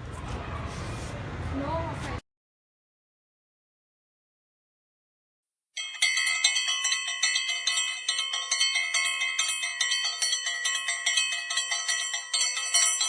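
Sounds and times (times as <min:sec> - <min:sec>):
handheld bell rung rapidly: 0:05.8 - 0:13.0.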